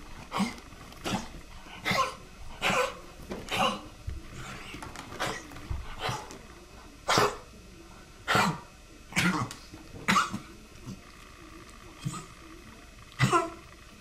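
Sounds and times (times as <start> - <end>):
animal coughing: 0.2 - 6.4, 7.0 - 7.5, 8.3 - 9.5, 10.1 - 10.5, 12.0 - 12.4, 13.2 - 13.6.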